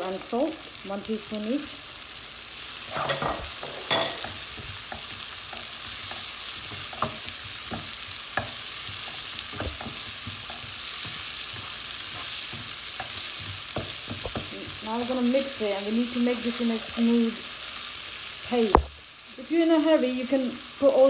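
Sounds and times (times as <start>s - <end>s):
masala sizzling in oil: 0.0s - 21.0s
spoon knocking against pan: 3.1s - 5.2s, 12.5s - 14.5s.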